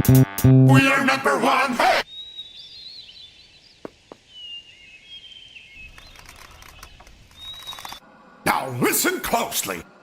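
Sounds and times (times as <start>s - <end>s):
birds chirping and whistling: 2.0s - 8.0s
sharp clicks: 5.8s - 8.0s.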